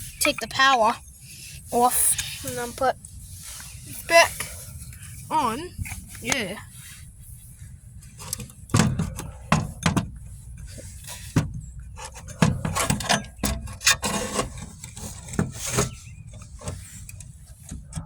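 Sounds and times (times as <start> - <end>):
small parts scraping: 0.0 - 6.6, 10.5 - 18.0.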